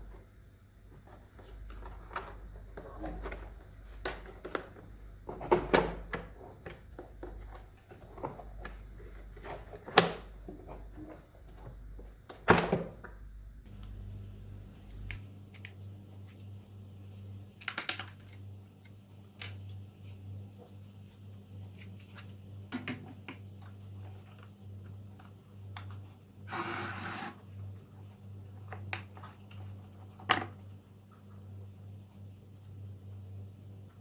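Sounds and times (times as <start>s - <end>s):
steady low hum: 0.0s - 17.6s.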